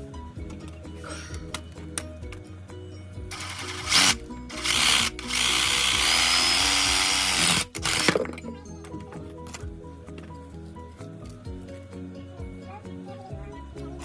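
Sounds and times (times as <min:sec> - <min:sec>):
background music: 0:00.0 - 0:14.0
power tool running: 0:03.3 - 0:08.3.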